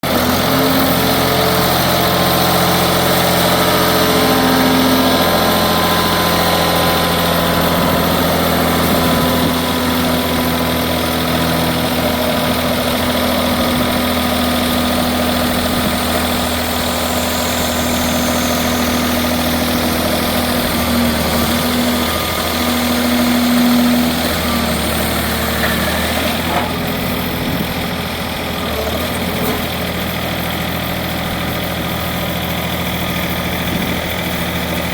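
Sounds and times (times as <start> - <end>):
hydraulic power unit humming: 0.0 - 34.9.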